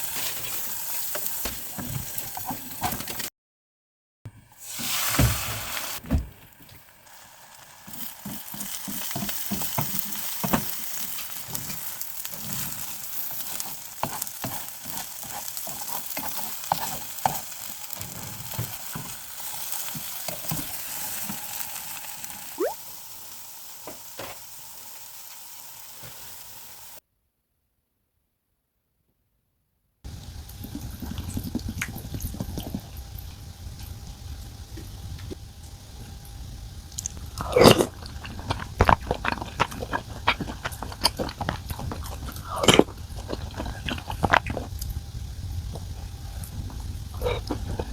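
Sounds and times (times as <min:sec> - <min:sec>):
food sizzling in a frying pan: 0:00.0 - 0:03.3, 0:04.4 - 0:27.0, 0:30.1 - 0:47.9
utensil scraping a pan: 0:07.9 - 0:21.6.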